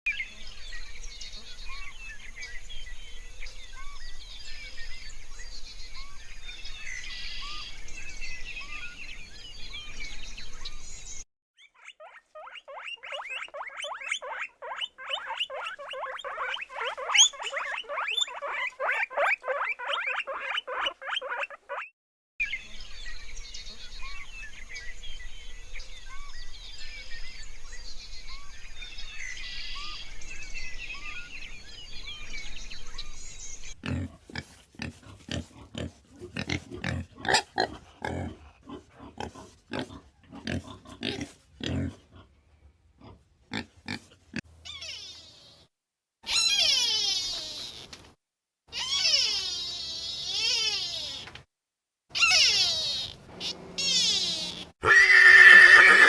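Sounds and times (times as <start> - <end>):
small birds chirping: 0.1 - 35.5, 44.6 - 45.7, 46.3 - 48.1, 48.7 - 51.4, 52.2 - 56.0
rapid short animal calls: 11.6 - 21.9, 46.3 - 48.0, 48.7 - 51.4, 52.1 - 56.0.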